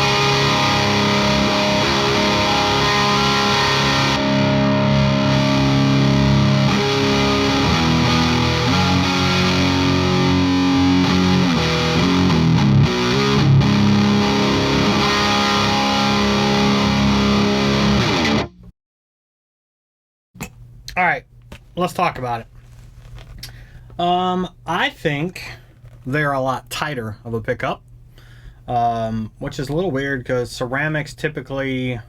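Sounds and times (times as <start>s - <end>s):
distorted electric guitar: 0.0s - 18.7s.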